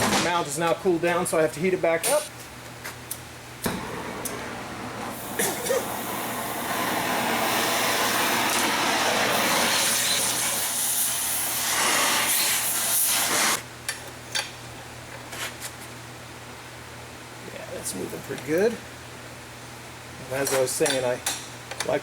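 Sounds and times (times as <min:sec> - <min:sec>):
torch flame hissing: 0:03.8 - 0:13.6.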